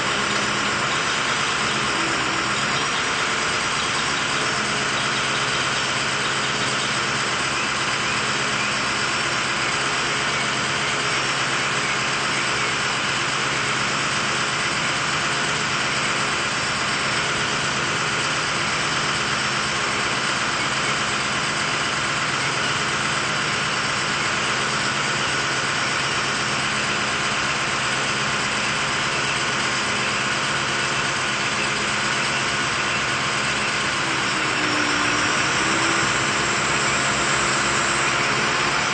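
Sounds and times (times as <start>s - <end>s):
engine running steadily: 0.0s - 38.9s.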